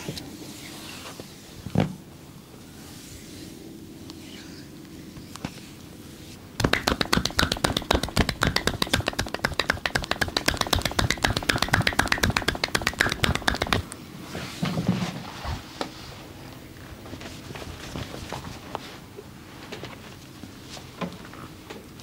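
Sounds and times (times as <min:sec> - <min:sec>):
hands slapping body in massage: 0:06.6 - 0:14.0.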